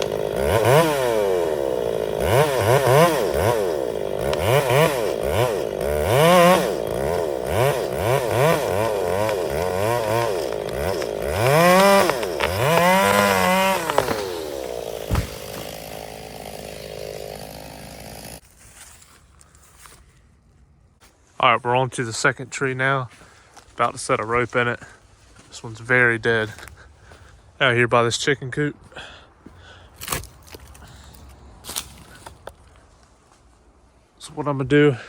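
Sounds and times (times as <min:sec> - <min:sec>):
chainsaw revving: 0:00.0 - 0:18.4.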